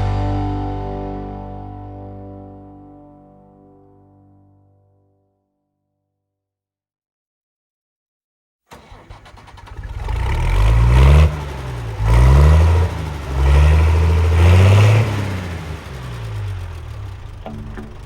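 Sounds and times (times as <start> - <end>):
heavy vehicle engine accelerating: 8.8 - 18.0.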